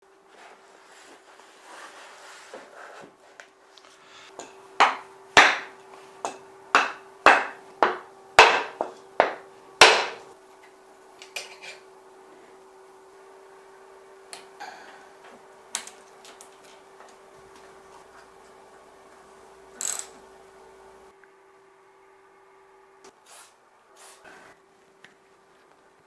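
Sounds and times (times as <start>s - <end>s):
faint steady hum: 0.0s - 26.0s
hammer strikes ringing: 4.3s - 10.3s.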